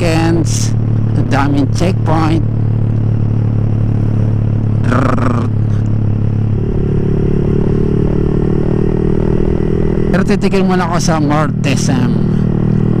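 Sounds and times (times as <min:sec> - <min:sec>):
motorcycle engine running: 0:00.0 - 0:13.0
higher steady tone: 0:06.0 - 0:10.2.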